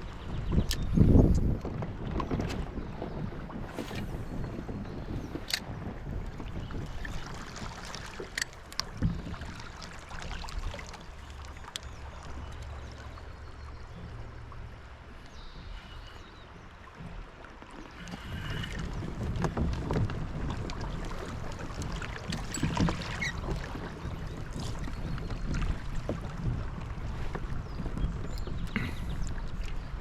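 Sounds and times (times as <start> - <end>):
wind on microphone: 0.0 - 9.7, 17.9 - 30.0
river water rumble: 0.0 - 30.0
small clicks and knocks: 8.2 - 9.2.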